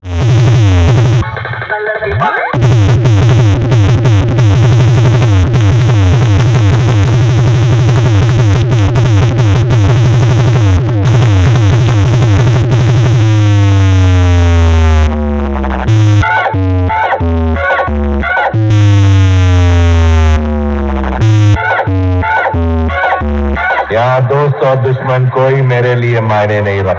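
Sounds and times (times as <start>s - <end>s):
loud electronic dance music: 0.0s - 26.9s
siren-like synth sweeps: 2.6s - 20.6s.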